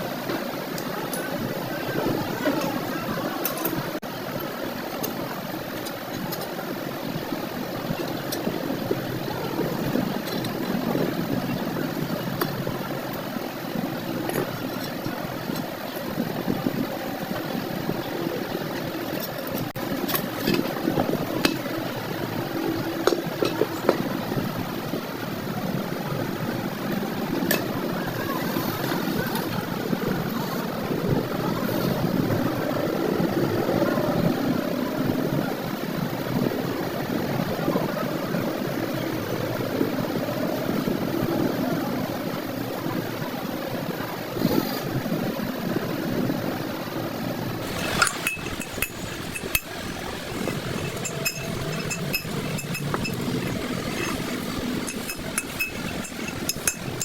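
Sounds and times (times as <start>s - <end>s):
workshop machine running: 47.6s - 57.0s.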